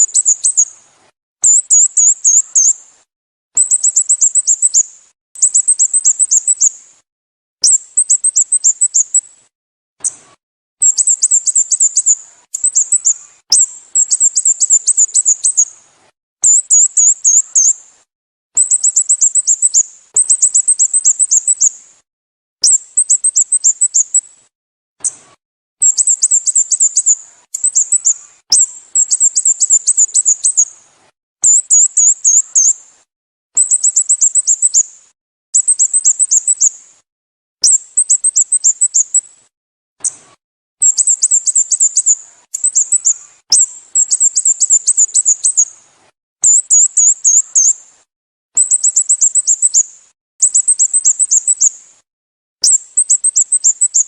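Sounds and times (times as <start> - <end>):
bird chirping rapidly: 0.0 - 0.7, 1.4 - 2.8, 3.6 - 6.8, 7.6 - 9.3, 10.8 - 15.7, 16.4 - 17.8, 18.6 - 21.8, 22.6 - 24.3, 25.8 - 30.7, 31.4 - 32.8, 33.6 - 34.9, 35.6 - 36.8, 37.6 - 39.3, 40.8 - 45.8, 46.4 - 47.8, 48.6 - 51.8, 52.6 - 54.0.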